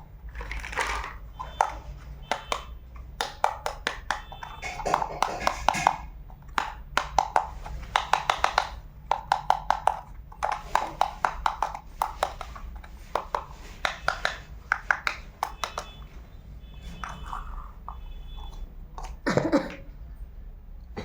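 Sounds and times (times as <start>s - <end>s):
plastic toy pieces clicking: 0.2s - 16.0s.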